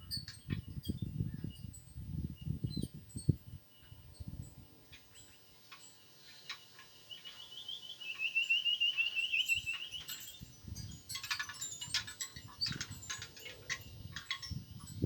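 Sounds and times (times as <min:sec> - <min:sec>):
bird chirps and clicks: 0:04.9 - 0:14.6
bird trilling: 0:07.1 - 0:10.2.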